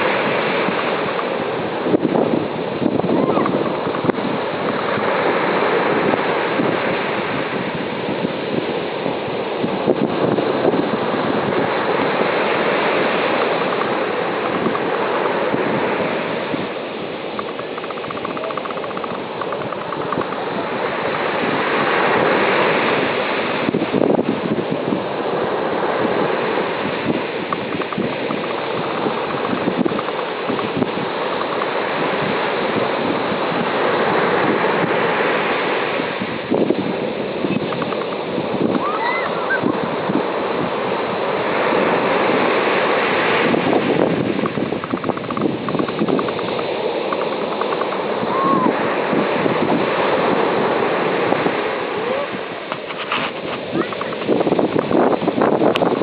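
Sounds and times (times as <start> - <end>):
sea waves washing ashore: 0.0 - 56.0
wind buffeting microphone: 0.0 - 56.0
faint voices: 38.8 - 39.8.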